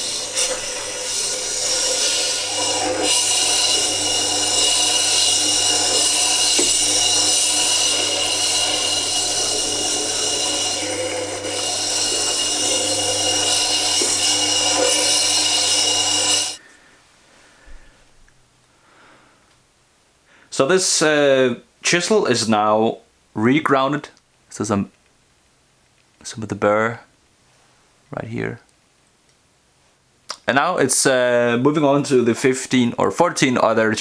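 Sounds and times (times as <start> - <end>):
grinding wheel hiss on steel: 0.0 - 16.6.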